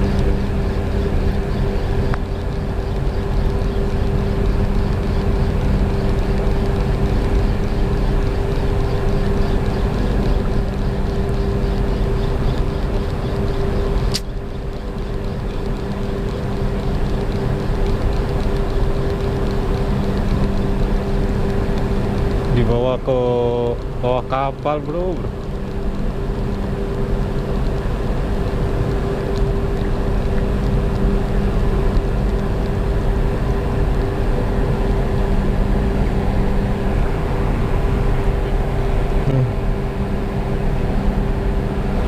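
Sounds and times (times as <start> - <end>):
boat engine humming: 0.0 - 42.0
sharp click: 14.1 - 14.3.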